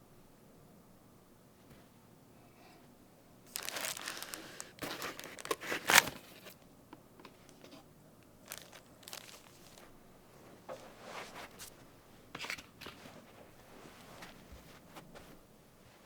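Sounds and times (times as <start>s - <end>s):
packaging wrap crinkling and tearing: 3.5s - 6.5s, 8.4s - 9.9s.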